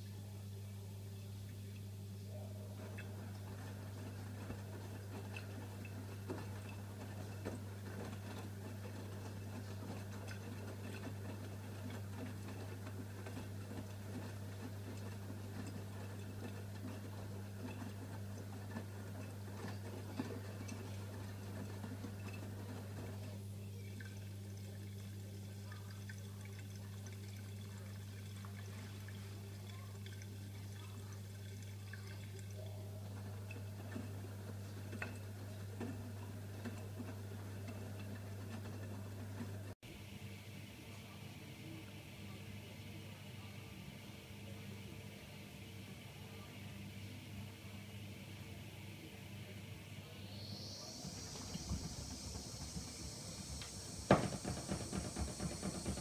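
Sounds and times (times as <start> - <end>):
low electrical hum: 0.0 - 56.0
water trickling into washing machine: 2.6 - 39.8, 50.1 - 56.0.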